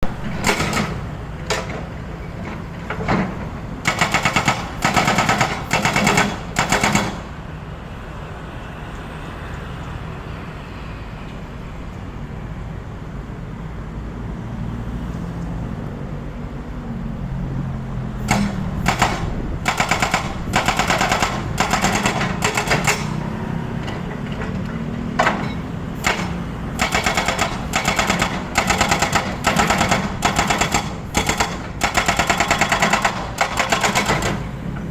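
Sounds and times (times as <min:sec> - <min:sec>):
hydraulic breaker hammering: 0:00.1 - 0:07.3, 0:18.2 - 0:34.9
steady engine drone: 0:15.8 - 0:34.9.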